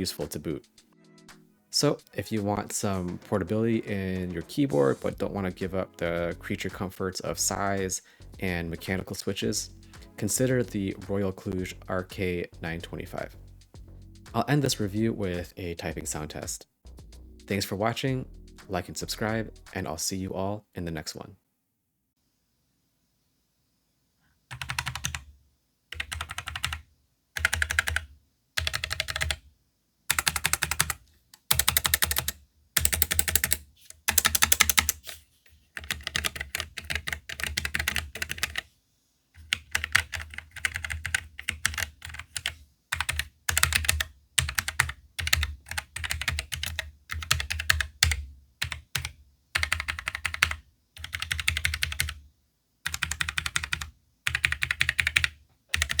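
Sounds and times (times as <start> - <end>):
mechanical keyboard typing: 24.5 - 25.2, 25.9 - 26.8, 27.4 - 29.4, 30.1 - 35.2, 35.8 - 38.6, 39.4 - 52.2, 52.9 - 56.0.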